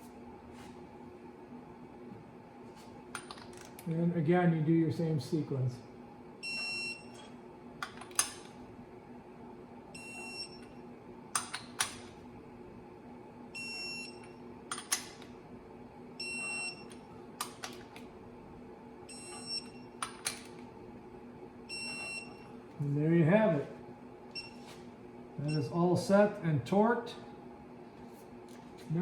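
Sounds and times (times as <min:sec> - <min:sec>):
steady low hum: 0:00.0 - 0:29.0
torque wrench beeping: 0:06.4 - 0:07.3, 0:10.0 - 0:10.8, 0:13.6 - 0:14.9, 0:16.2 - 0:17.0, 0:19.1 - 0:20.1, 0:21.7 - 0:22.5.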